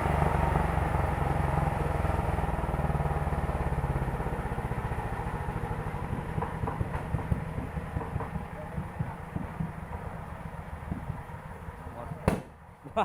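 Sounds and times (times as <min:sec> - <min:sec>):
sawmill engine running: 0:00.0 - 0:12.8
sharp knocks: 0:06.0 - 0:11.5, 0:12.2 - 0:12.6.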